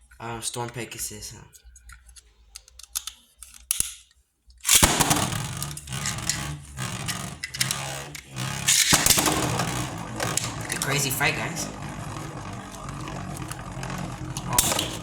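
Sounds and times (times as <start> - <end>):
launcher clicks: 4.6 - 11.2
spinning tops clashing: 4.7 - 15.0
spinning tops whirring: 4.7 - 15.0.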